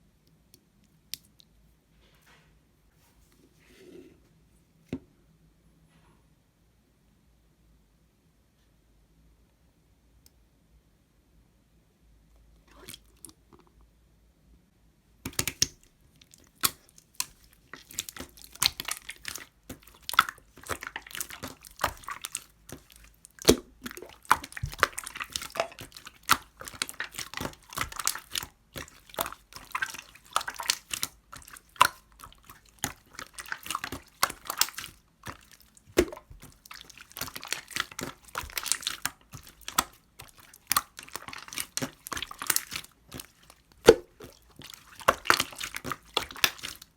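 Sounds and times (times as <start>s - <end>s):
slime squishing with sticky crackles: 12.6s - 13.6s, 15.3s - 46.9s.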